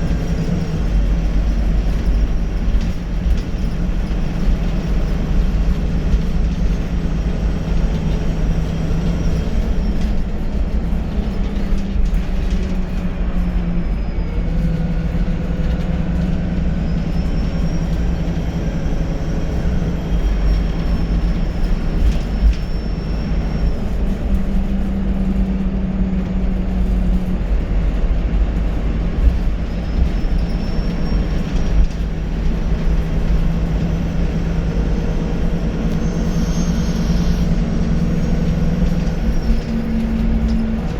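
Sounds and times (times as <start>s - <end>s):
bus engine drone: 0.0s - 40.9s
turbocharger whistle: 33.0s - 39.8s.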